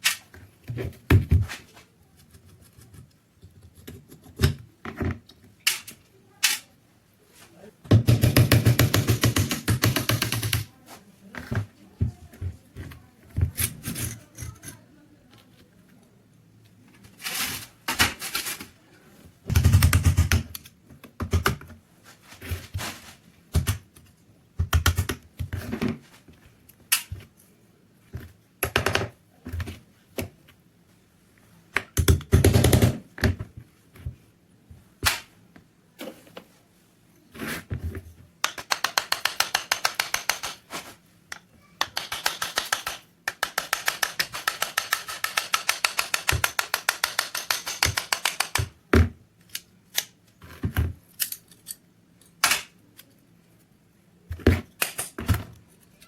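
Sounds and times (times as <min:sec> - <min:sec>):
pistol parts clicking and scraping: 0:00.0 - 0:00.4, 0:05.6 - 0:06.7, 0:41.8 - 0:48.7, 0:51.1 - 0:53.2, 0:54.7 - 0:56.0.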